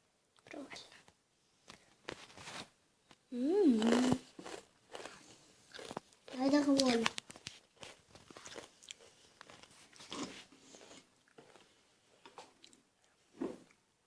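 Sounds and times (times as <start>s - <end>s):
person crunching and chewing cereal: 3.7s - 13.2s.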